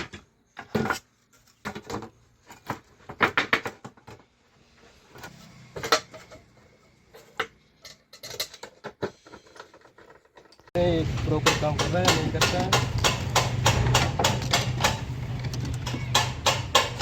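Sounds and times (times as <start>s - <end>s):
hands and tools clattering: 5.1s - 17.0s.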